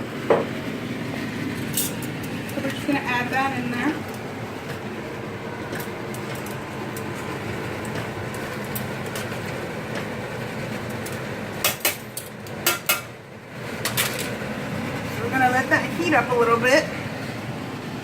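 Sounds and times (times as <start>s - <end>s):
steady background noise: 0.0s - 18.0s
kitchenware clinking against pan: 12.6s - 13.1s.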